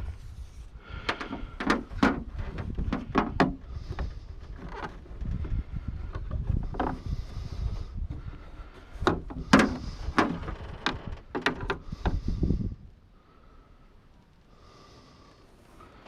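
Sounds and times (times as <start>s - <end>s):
sharp knocks and clunks: 1.0s - 5.5s, 8.1s - 12.2s.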